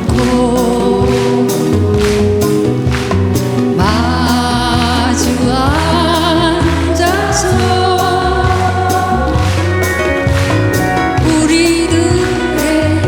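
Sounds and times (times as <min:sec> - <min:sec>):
woman singing with vibrato: 0:00.0 - 0:02.9, 0:03.6 - 0:10.4, 0:11.0 - 0:13.0
bass line: 0:00.0 - 0:13.0
drum beats: 0:00.0 - 0:13.0.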